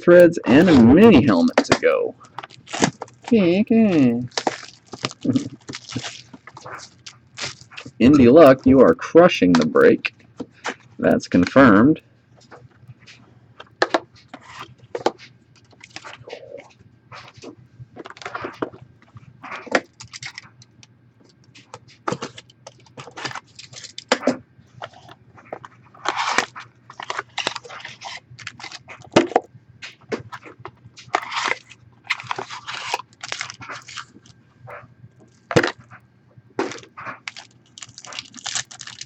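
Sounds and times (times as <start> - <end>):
plastic wrappers crinkling and tearing: 0.0 - 11.7, 12.4 - 36.0, 36.6 - 39.0.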